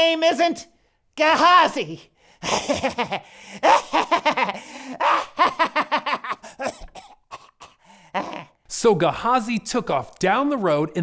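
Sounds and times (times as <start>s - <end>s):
person snickering laugh: 2.4s - 8.5s.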